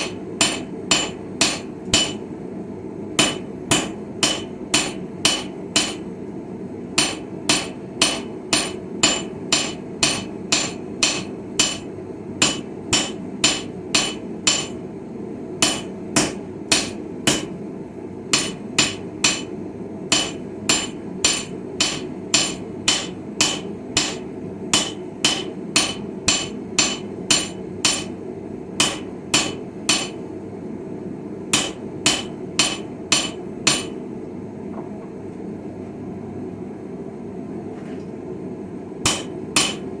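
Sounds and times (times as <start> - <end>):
hammer striking steel on anvil: 0.0 - 2.3, 3.2 - 6.1, 7.0 - 14.9, 15.6 - 17.6, 18.3 - 28.2, 28.8 - 30.2, 31.5 - 34.0, 39.0 - 40.0.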